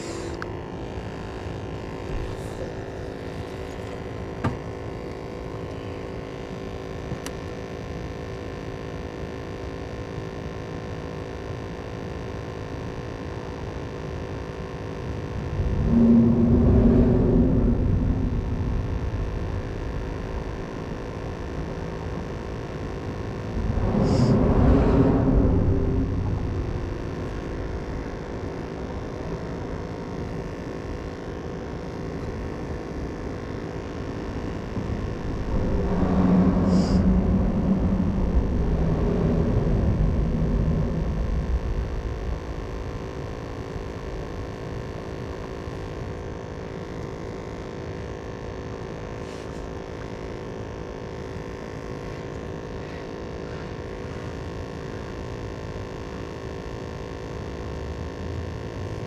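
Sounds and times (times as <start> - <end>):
vehicle passing with drone: 15.3 - 19.7, 23.3 - 28.1, 34.6 - 42.3
traffic rumble on bridge: 15.4 - 19.9, 23.4 - 27.8, 34.6 - 42.3.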